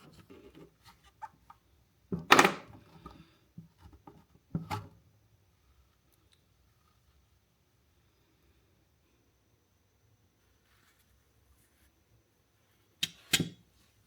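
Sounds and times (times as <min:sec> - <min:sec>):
tools tapping and clicking: 0:13.0 - 0:13.6.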